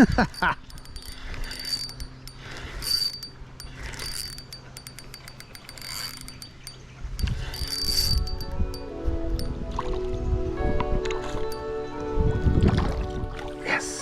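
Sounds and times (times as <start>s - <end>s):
fishing reel whirring and clicking: 0.0s - 9.6s.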